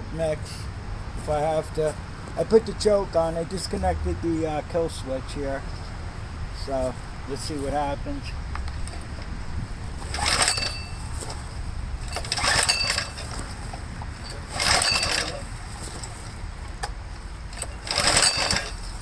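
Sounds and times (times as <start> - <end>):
engine cranking: 8.6 - 19.0
recoil starter rope pulls: 8.6 - 19.0.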